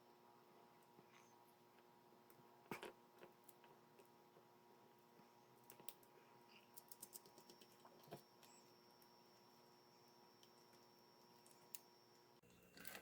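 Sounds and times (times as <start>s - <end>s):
faint hum: 0.0s - 13.0s
small metal screws clicking: 6.7s - 7.8s.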